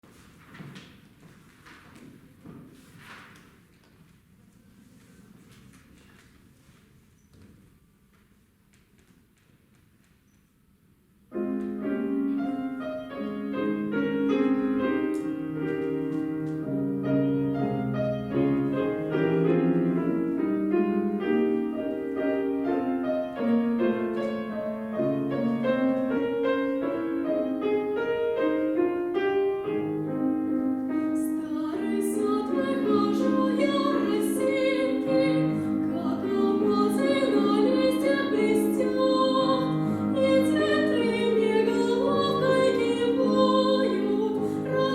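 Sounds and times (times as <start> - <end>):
piano playing: 11.2 - 44.9
woman singing classical style: 30.8 - 44.9.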